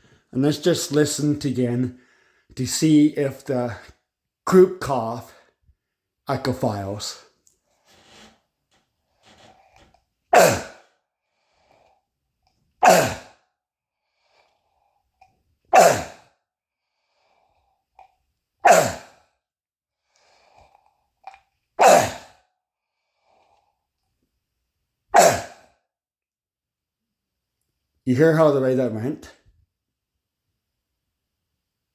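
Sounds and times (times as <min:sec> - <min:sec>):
man coughing: 0:10.4 - 0:10.8, 0:12.8 - 0:13.3, 0:15.8 - 0:16.2, 0:18.6 - 0:19.1, 0:21.8 - 0:22.2, 0:25.2 - 0:25.6.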